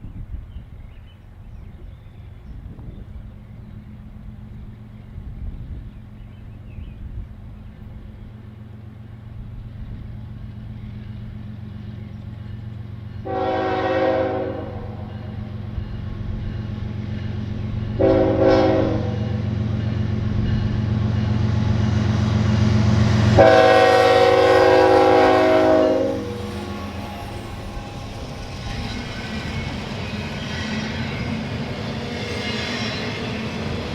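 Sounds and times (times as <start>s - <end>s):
diesel locomotive engine rumble: 0.0s - 33.9s
locomotive air horn blasts: 13.2s - 15.3s, 18.0s - 19.4s, 23.3s - 28.2s.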